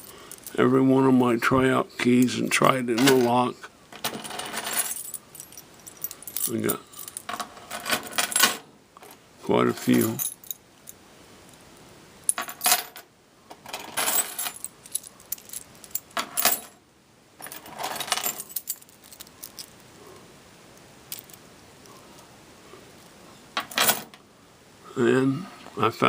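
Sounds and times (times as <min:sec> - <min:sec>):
keys jangling on a ring: 0:04.6 - 0:07.3, 0:14.1 - 0:16.7, 0:18.2 - 0:19.8.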